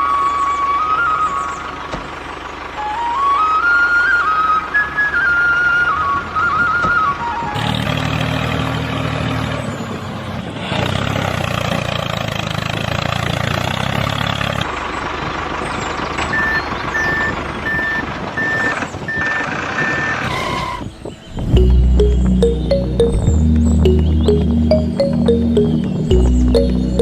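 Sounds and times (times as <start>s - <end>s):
engine hum: 0.0s - 27.0s
vehicle reversing alarm beeps: 16.2s - 27.0s.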